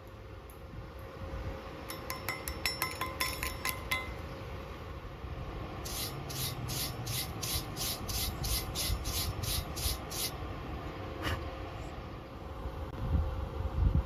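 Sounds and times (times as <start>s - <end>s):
hand tool scraping metal: 5.9s - 10.3s.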